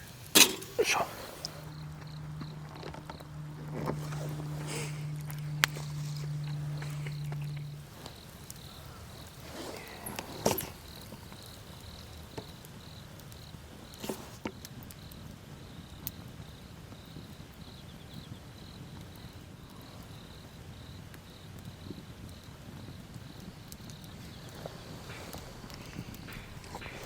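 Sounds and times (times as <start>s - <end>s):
insect chirping: 0.0s - 27.0s.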